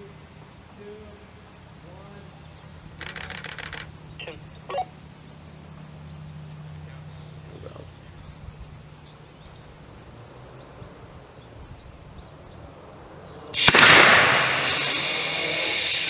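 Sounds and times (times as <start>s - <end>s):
rocket exhaust roaring: 13.6s - 16.0s
sharp bang: 13.6s - 16.0s.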